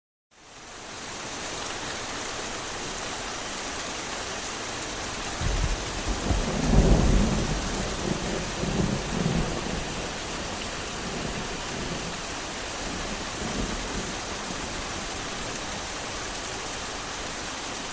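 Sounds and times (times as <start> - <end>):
steady rain hiss: 0.4 - 17.9
low rumble of thunder: 5.4 - 15.9.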